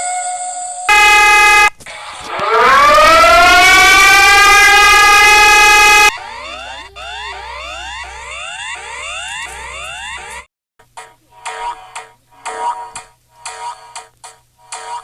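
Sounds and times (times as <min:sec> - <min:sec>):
harsh steady alarm tone: 0:00.9 - 0:10.5
siren wailing: 0:00.9 - 0:10.5.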